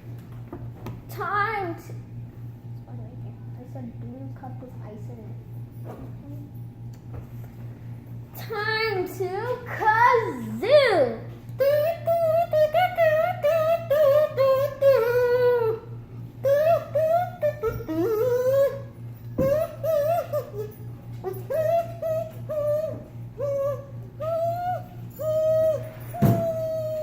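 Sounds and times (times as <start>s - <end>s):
kazoo tune: 11.6s - 27.0s.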